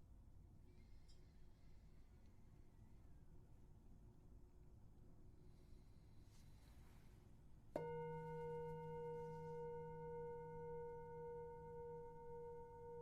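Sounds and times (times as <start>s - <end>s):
metal singing bowl ringing: 7.8s - 13.0s.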